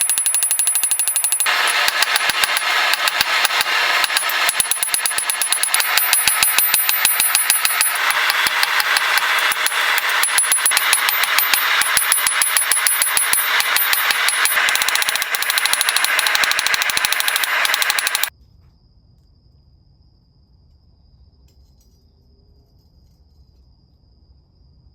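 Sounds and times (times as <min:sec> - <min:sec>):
hammer blows on metal: 0:00.0 - 0:18.3.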